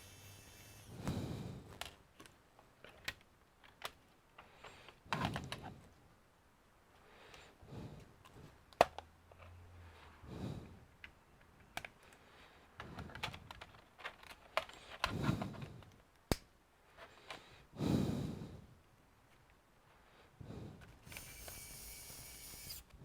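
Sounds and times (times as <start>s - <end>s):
soft rustling handling noise: 11.0s - 17.6s.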